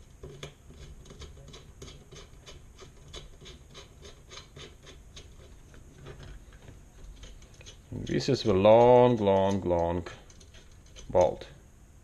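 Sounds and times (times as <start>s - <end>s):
metallic clicking of bolt screwing: 6.0s - 11.4s.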